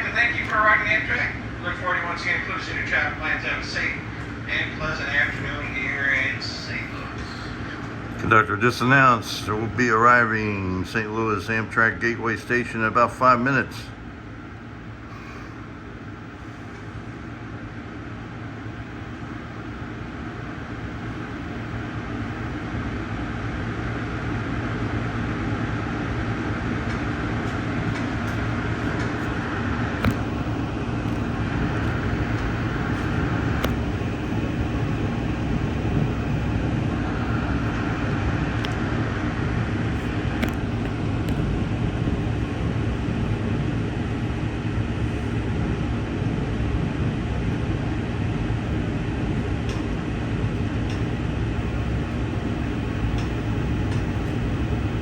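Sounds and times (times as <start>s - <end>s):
sharp clicks and knocks: 26.9s - 34.1s, 40.4s - 42.2s.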